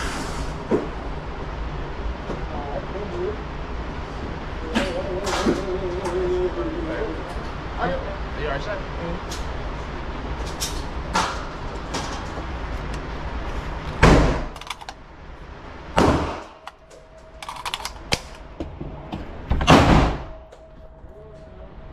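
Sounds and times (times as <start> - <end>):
loud echoing bangs: 15.9 - 16.6, 19.7 - 20.4.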